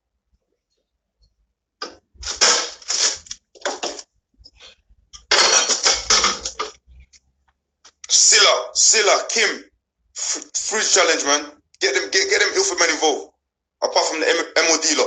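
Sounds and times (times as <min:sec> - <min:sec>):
things rattling in a fridge: 0:02.2 - 0:04.0, 0:05.2 - 0:06.8.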